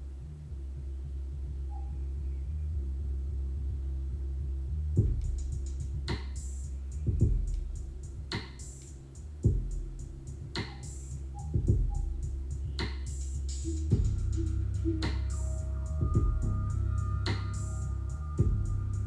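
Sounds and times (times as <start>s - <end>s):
deep bass: 0.0s - 19.0s
drum-machine beat: 5.0s - 19.0s.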